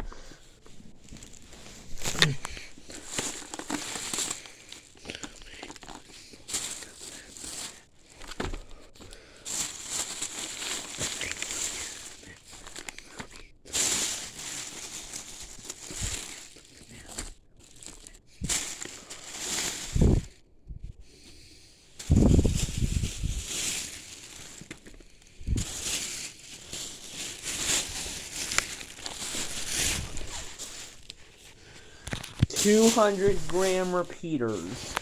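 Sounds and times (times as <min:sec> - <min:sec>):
packaging crinkling: 0:00.0 - 0:20.4, 0:22.0 - 0:35.0.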